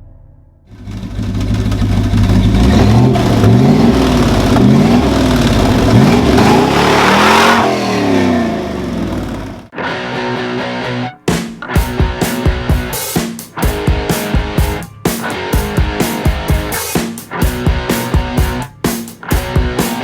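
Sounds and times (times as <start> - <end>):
engine revving: 0.7 - 9.7
electric guitar music: 1.2 - 20.0.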